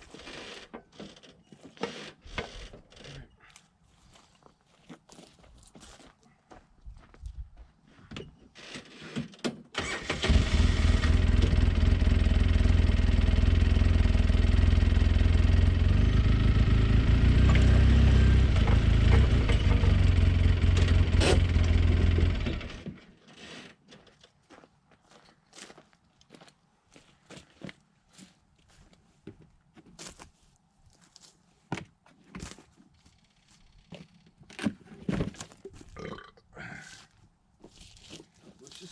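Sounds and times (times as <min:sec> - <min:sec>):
small gasoline engine idling: 0:09.8 - 0:22.8.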